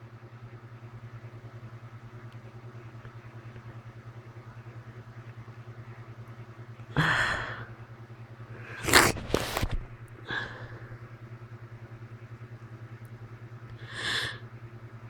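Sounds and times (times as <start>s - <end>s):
gasping intake of breath: 8.6s - 11.0s, 13.8s - 14.4s
person sneezing: 8.7s - 10.9s, 13.9s - 14.4s
short breath out: 8.7s - 10.9s, 13.8s - 14.4s.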